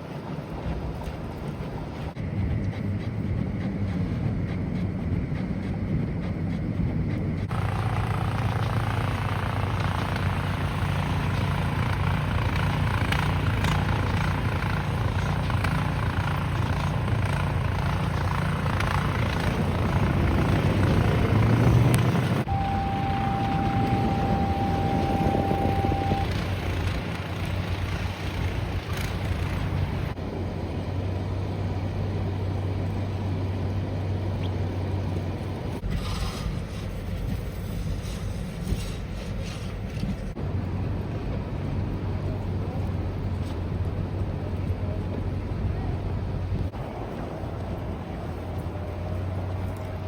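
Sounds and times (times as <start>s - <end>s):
low engine rumble: 0.0s - 50.0s
steady high tone: 22.4s - 26.6s.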